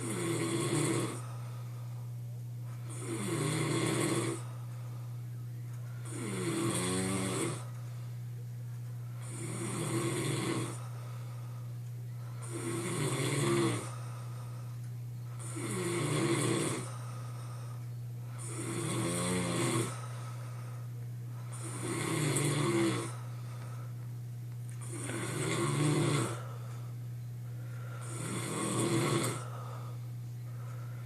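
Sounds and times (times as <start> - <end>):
man snoring: 0.0 - 1.5, 2.8 - 4.6, 6.0 - 7.7, 9.2 - 11.1, 12.2 - 14.4, 15.3 - 17.6, 18.2 - 23.9, 24.8 - 26.8, 27.6 - 30.0
steady low hum: 0.0 - 31.0.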